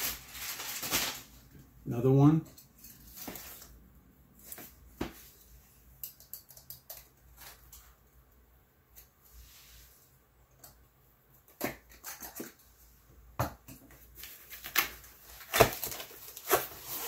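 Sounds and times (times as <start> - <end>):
plastic packaging rustling: 0.0 - 1.6.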